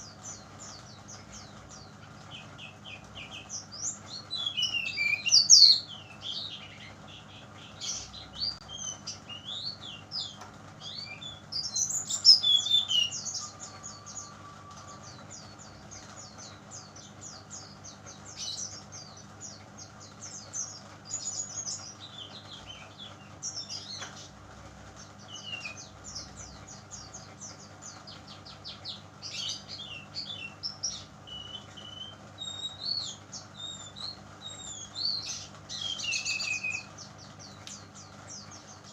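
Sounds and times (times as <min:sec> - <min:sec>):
bird chirping and trilling: 0:00.0 - 0:24.4, 0:25.0 - 0:38.9
faint steady hum: 0:00.0 - 0:38.9.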